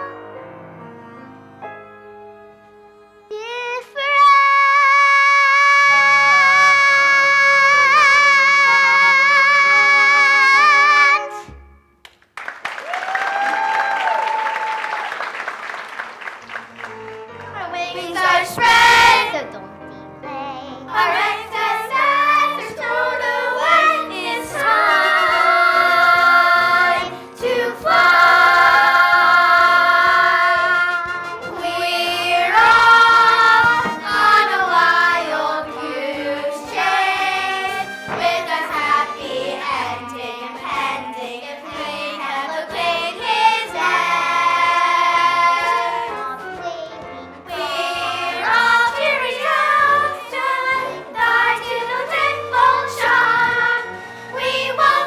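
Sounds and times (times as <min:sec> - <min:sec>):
young voices singing: 0:03.4 - 0:11.4, 0:18.0 - 0:19.4, 0:20.9 - 0:46.7, 0:47.5 - 0:55.0
instrumental accompaniment: 0:16.4 - 0:55.0.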